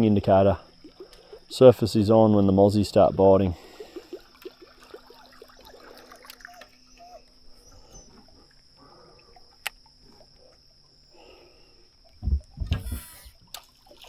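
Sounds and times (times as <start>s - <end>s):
animal chirps gliding in pitch: 6.3s - 8.5s
high-pitched insect drone: 12.8s - 13.5s.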